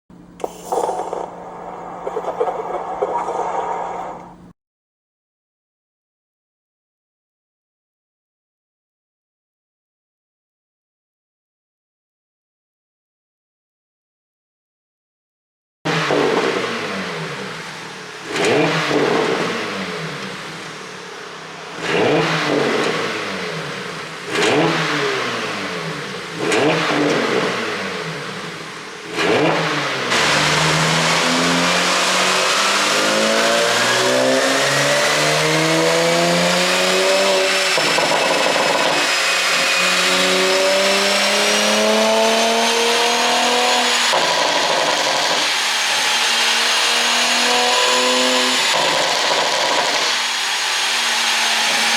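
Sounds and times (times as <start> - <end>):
faint rising whine: 0.5 - 4.5
car engine revving: 15.9 - 51.9
engine accelerating through gears: 15.9 - 51.9.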